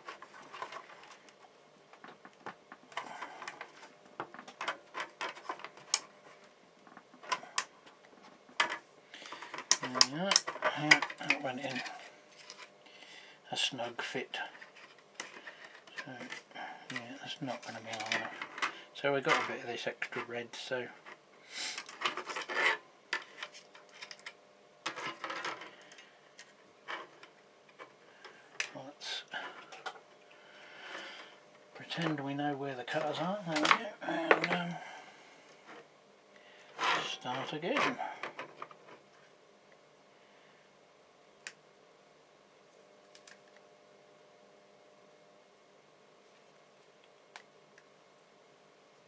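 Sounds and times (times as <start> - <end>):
tools and wire rummaged through: 0.0 - 12.7, 14.5 - 20.3, 21.8 - 30.0, 30.9 - 34.9, 36.7 - 39.2
plastic clicking and creaking: 8.5 - 12.6, 33.0 - 34.7.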